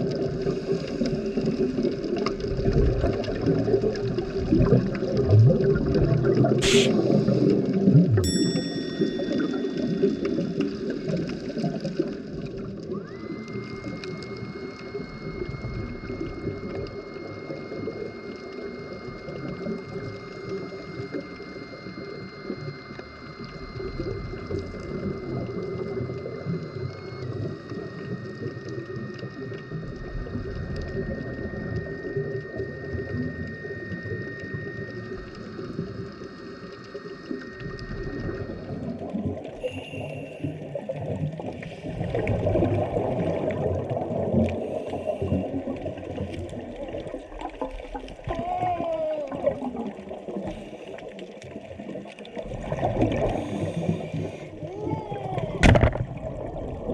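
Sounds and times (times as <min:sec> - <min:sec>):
underwater water rushing: 0:00.0 - 0:56.9
high tones: 0:06.6 - 0:07.0, 0:08.2 - 0:11.3
high-pitched whine: 0:06.6 - 0:07.5, 0:08.2 - 0:48.2.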